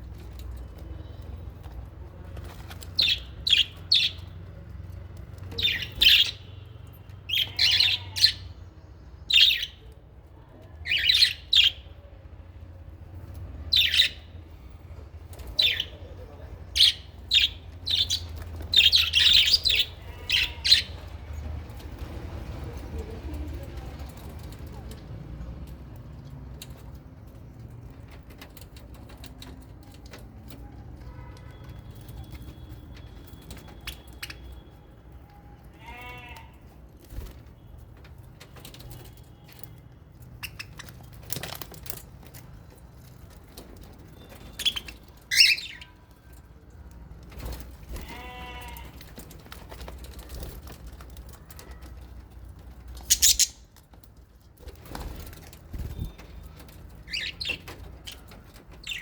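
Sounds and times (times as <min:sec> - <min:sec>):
birds rustling and clicking: 0:00.0 - 0:06.3, 0:17.2 - 0:59.0
shrill bird calls: 0:53.1 - 0:53.6
wavering drawn-out bird calls: 0:53.1 - 0:53.6.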